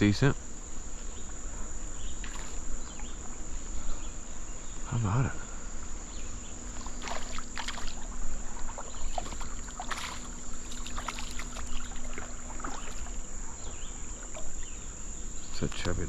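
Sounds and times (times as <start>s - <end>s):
high-pitched insect drone: 0.0s - 16.0s
creek water splashing: 2.2s - 3.9s, 6.6s - 15.9s.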